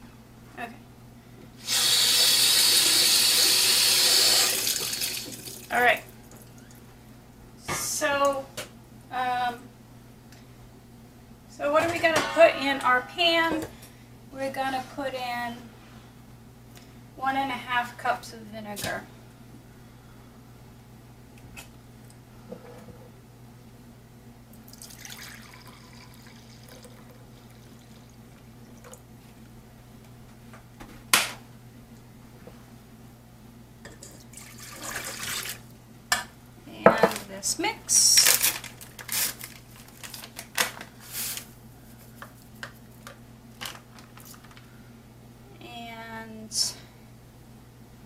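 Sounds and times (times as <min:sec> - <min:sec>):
liquid pouring and splashing: 0:04.4 - 0:05.7, 0:24.7 - 0:29.0, 0:34.0 - 0:35.7
steady low hum: 0:05.4 - 0:48.0
packet rustling: 0:38.2 - 0:41.5, 0:43.0 - 0:44.7.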